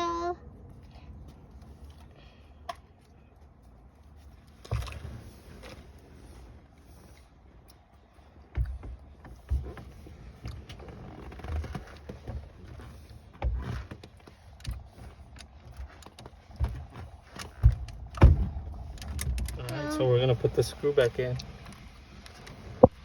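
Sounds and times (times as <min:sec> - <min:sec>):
steering wheel knocks and clunks: 0:08.3 - 0:20.0.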